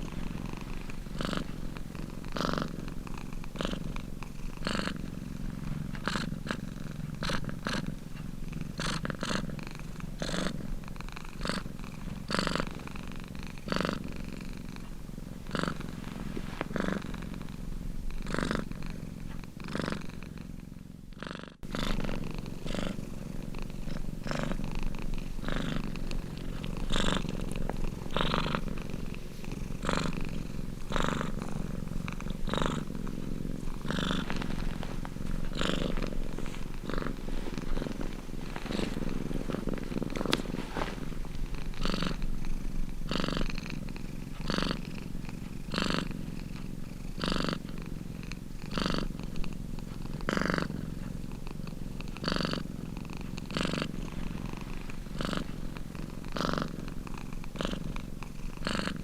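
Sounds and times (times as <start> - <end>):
cat purring: 0.0 - 59.0.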